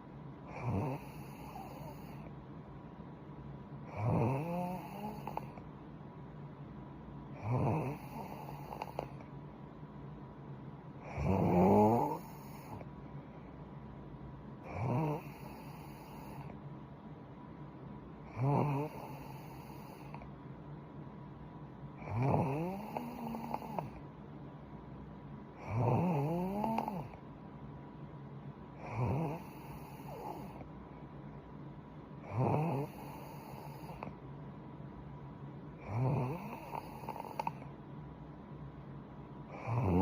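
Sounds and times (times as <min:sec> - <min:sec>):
woman snoring: 0:00.5 - 0:02.3, 0:03.9 - 0:05.6, 0:07.4 - 0:09.2, 0:11.0 - 0:12.9, 0:14.7 - 0:16.6, 0:18.3 - 0:20.2, 0:22.0 - 0:24.0, 0:25.6 - 0:27.2, 0:28.8 - 0:30.6, 0:32.2 - 0:34.1, 0:35.8 - 0:37.7, 0:39.5 - 0:40.0.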